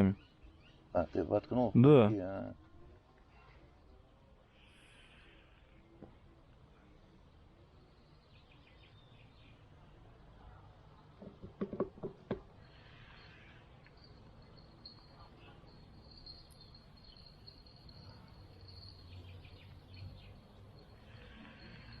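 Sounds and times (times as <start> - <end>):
sharp knocks and clicks: 11.2 - 12.5
high insect trill: 12.6 - 22.0.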